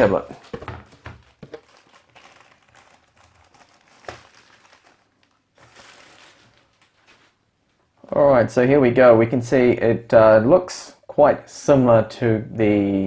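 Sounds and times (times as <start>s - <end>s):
packaging crinkling and rustling: 0.0s - 7.5s.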